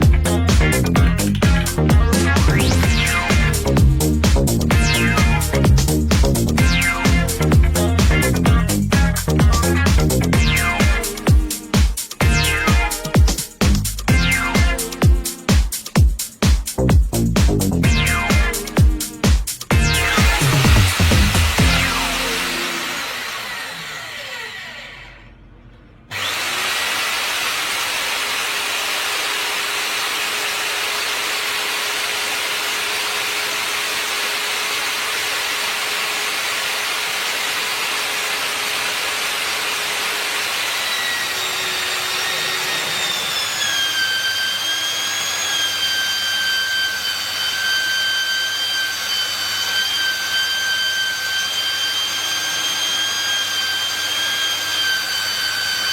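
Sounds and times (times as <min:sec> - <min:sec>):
magnetic drill motor whining: 0:19.7 - 0:25.4, 0:26.1 - 0:55.9.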